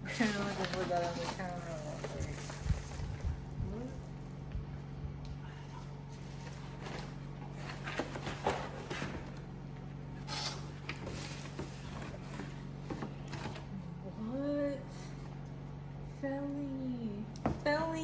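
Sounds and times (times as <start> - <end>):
steady low hum: 0.0 - 18.0
packaging rustling and crinkling: 0.1 - 3.5.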